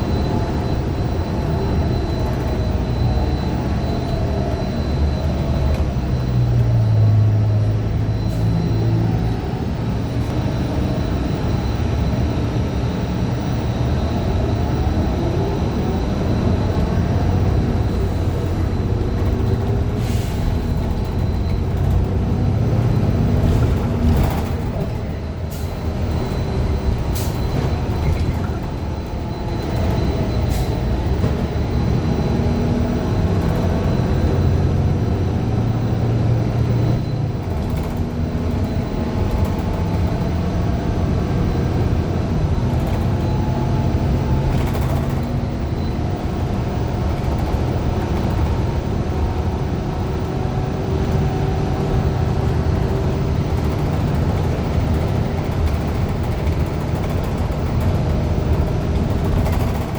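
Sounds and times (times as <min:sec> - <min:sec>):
bus engine drone: 0:00.0 - 0:59.9
sharp rattles and clicks: 0:52.7 - 0:59.9.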